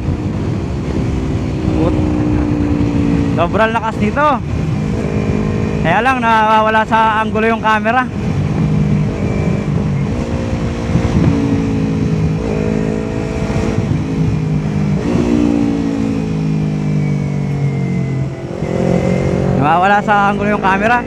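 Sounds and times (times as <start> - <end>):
motorcycle engine revving: 0.0 - 21.0
wind rushing over microphone: 0.0 - 21.0.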